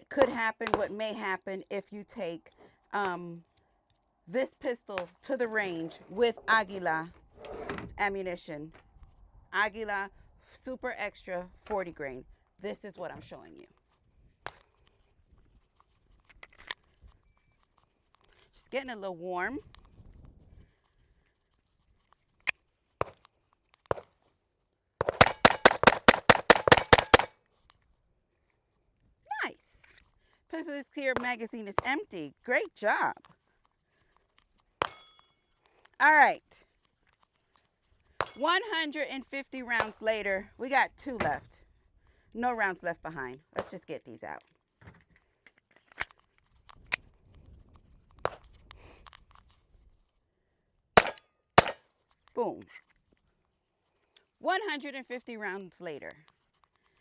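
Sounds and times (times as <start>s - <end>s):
faint ticks and rustle: 13.3s - 18.8s, 19.5s - 24.6s, 27.4s - 38.3s, 44.3s - 50.3s, 51.8s - 54.4s, 56.1s - 57.0s
pistol shots: 25.0s - 27.3s, 51.0s - 51.8s.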